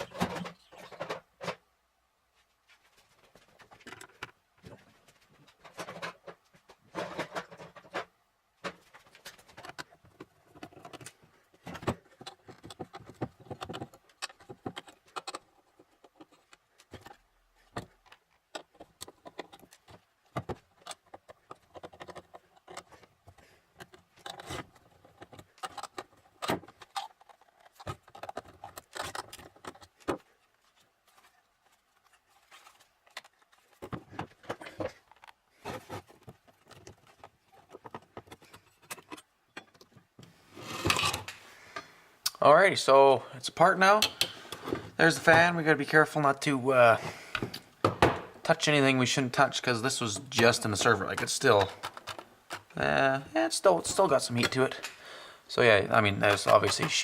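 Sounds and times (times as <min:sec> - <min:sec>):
metal parts clicking and scraping: 0:08.7 - 0:35.9.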